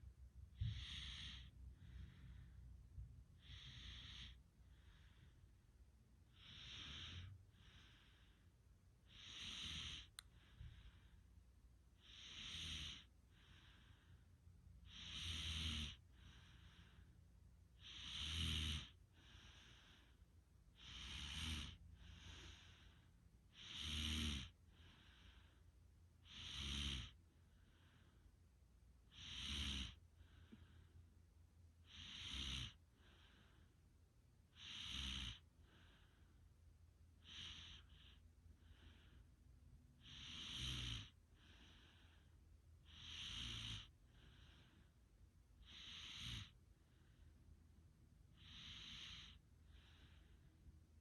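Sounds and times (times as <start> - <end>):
soft breathing: 0.0 - 18.1, 18.8 - 23.8, 24.4 - 26.4, 27.1 - 34.6, 35.3 - 51.0
person snoring: 0.6 - 2.4, 3.4 - 5.2, 9.1 - 10.9, 12.0 - 14.0, 14.9 - 17.0, 17.8 - 20.2, 20.8 - 25.5, 26.2 - 27.2, 29.1 - 30.7, 31.8 - 33.5, 34.6 - 35.4, 40.0 - 42.2, 42.8 - 44.7, 45.6 - 46.6, 48.4 - 50.3.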